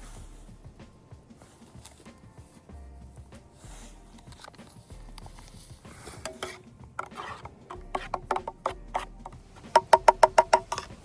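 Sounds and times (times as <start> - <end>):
metal cookware clinking: 6.0 - 9.1.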